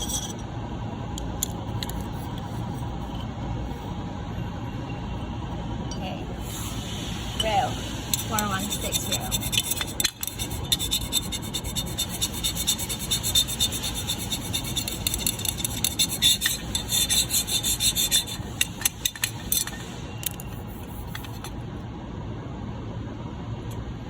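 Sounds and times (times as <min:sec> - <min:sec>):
screwdriver scraping metal rail: 0:08.2 - 0:21.6.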